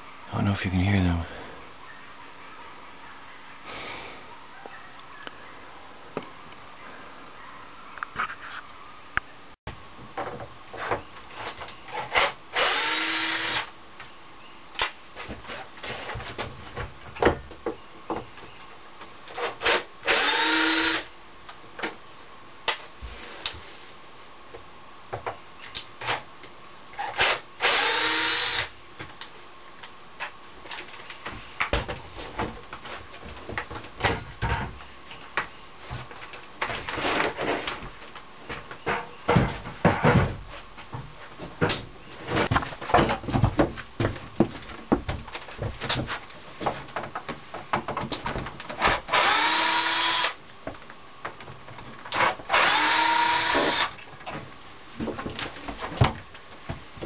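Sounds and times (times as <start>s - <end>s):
small power tool motor: 12.1s - 13.7s, 19.7s - 21.0s, 27.2s - 28.7s, 49.1s - 50.4s, 52.5s - 53.9s.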